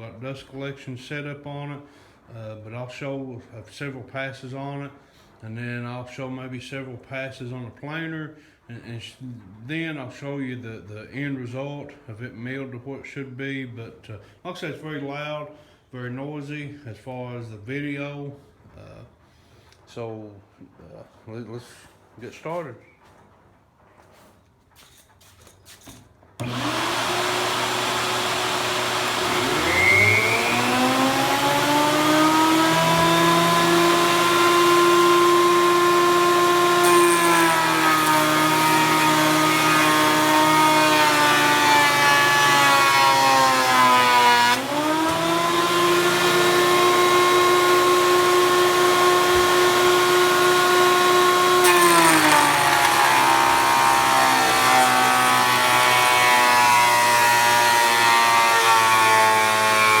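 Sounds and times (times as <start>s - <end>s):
jointer motor whining: 26.4s - 60.0s
rough cutting of boards: 26.4s - 60.0s.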